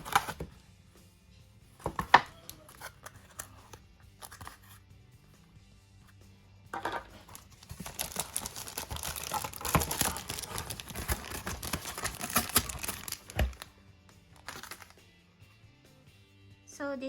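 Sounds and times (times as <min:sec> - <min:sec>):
packaging crinkling and tearing: 0:07.2 - 0:13.7, 0:14.4 - 0:15.0.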